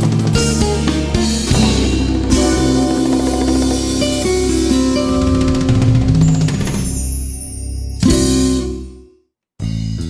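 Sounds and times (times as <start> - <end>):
fast drum roll: 0.0 - 7.3
music with drums guitar and bass: 0.0 - 7.4, 8.0 - 9.0, 9.6 - 10.0.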